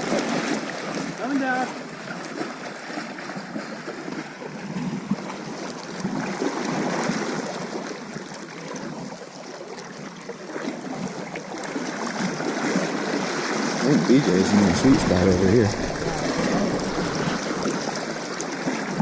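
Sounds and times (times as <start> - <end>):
river water rushing: 11.5 - 19.0.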